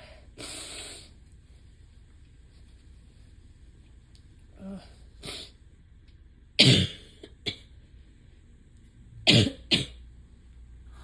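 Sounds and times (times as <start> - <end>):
person coughing: 6.6 - 7.7, 9.3 - 10.0.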